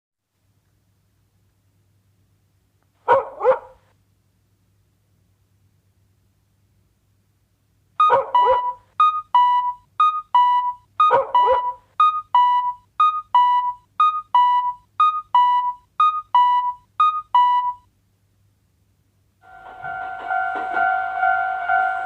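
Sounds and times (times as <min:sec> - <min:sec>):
two-tone railroad crossing bell: 0:19.4 - 0:22.0.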